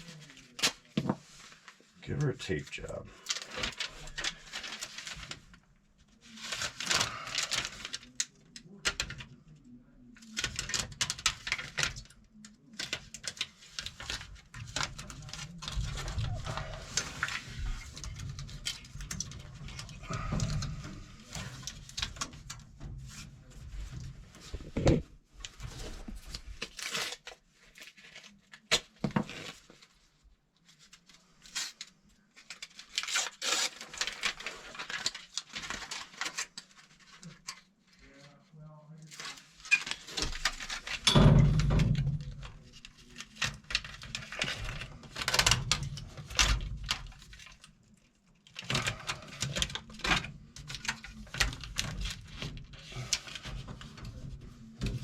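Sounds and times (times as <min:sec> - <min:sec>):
crackly rustling: 0:00.0 - 0:55.0.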